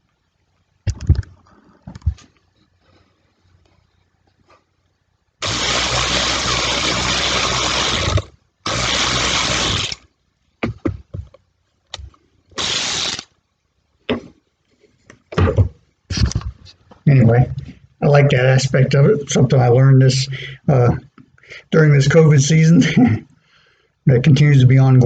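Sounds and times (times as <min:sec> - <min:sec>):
cordless power wrench running: 0:05.4 - 0:10.0, 0:12.6 - 0:13.3.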